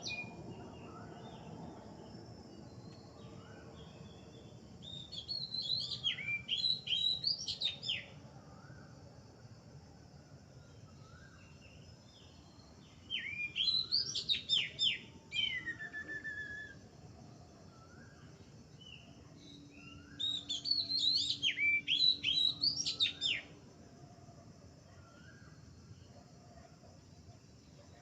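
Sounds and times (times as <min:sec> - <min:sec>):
faint bird chirps: 0:00.0 - 0:09.2, 0:10.4 - 0:28.0
songbird singing: 0:00.0 - 0:28.0
falling whistle: 0:15.4 - 0:16.8.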